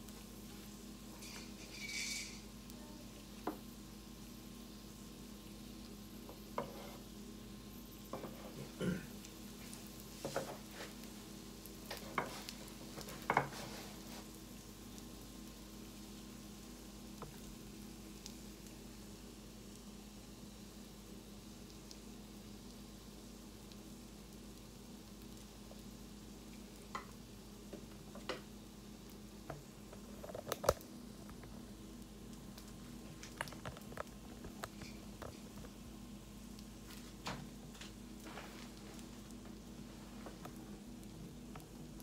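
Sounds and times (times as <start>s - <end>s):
food sizzling: 0.0s - 42.0s
utensil scraping on griddle: 1.2s - 2.5s, 6.3s - 7.2s, 8.1s - 8.8s, 9.6s - 11.1s, 11.8s - 14.3s.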